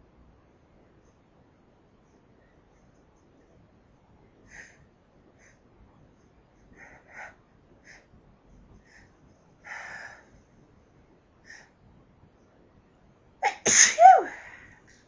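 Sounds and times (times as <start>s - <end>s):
person sneezing: 13.4s - 14.5s.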